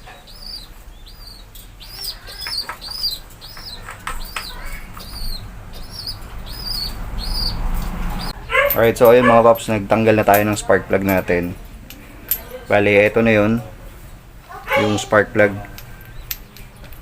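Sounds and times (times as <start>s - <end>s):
small bird chirping: 0.0s - 8.4s.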